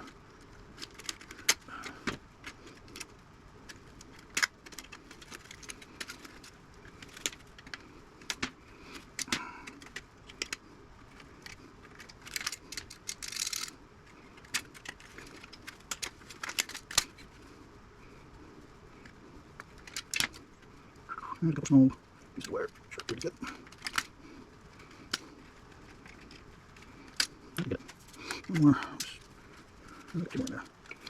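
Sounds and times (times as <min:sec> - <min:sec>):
metal parts clicking and clinking: 0:11.4 - 0:13.7.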